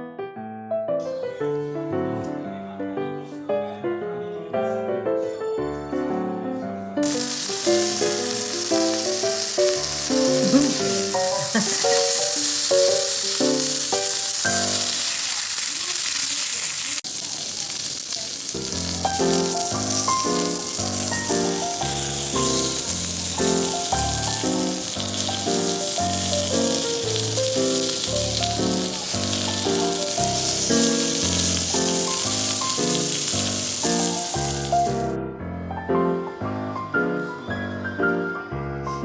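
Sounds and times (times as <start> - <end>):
piano-like background music: 0.0 - 15.3, 18.6 - 39.0
food sizzling in a pan: 7.0 - 35.2.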